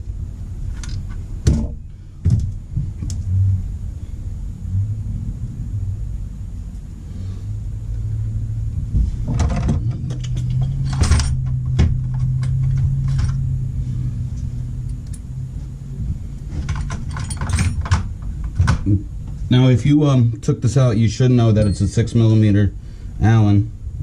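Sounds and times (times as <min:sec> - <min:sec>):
low steady hum: 0:00.0 - 0:24.0
metal tools clinking: 0:09.5 - 0:11.4, 0:16.5 - 0:18.1.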